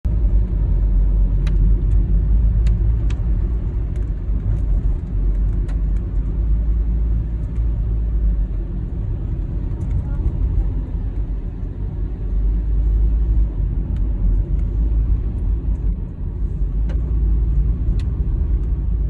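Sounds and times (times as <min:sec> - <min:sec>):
car engine rumble: 0:00.0 - 0:19.0
road noise: 0:00.0 - 0:19.0
faint light ticks: 0:17.8 - 0:18.8.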